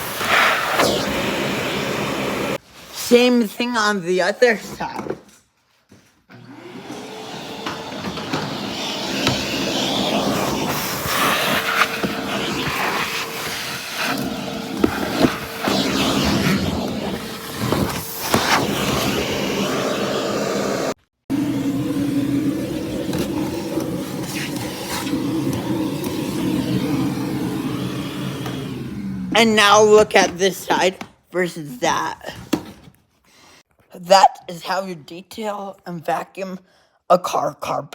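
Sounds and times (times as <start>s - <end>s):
vacuum cleaner whine: 0.0s - 2.6s, 6.3s - 30.3s.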